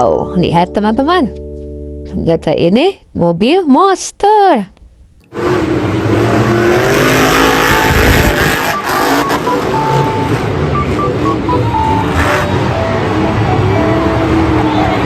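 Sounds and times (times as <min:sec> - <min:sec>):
monster truck engine running: 0:05.4 - 0:14.8
short high tones: 0:07.6 - 0:15.0.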